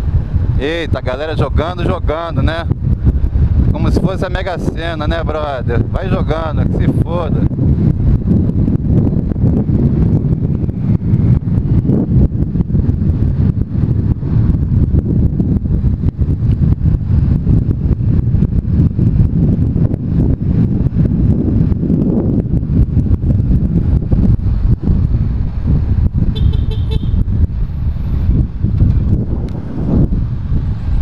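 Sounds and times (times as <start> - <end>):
road noise: 0.0 - 31.0
wind buffeting microphone: 0.0 - 31.0
motorcycle engine: 22.4 - 31.0.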